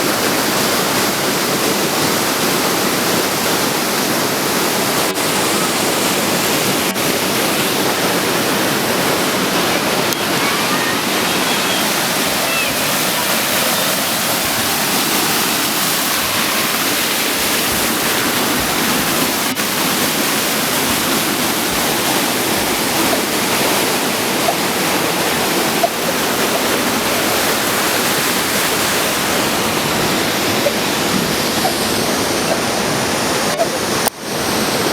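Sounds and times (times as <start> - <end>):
waterfall rushing: 0.0 - 34.9.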